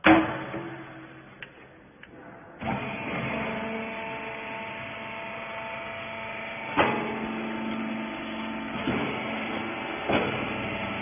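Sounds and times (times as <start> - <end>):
baler motor and pump humming: 2.6 - 11.0.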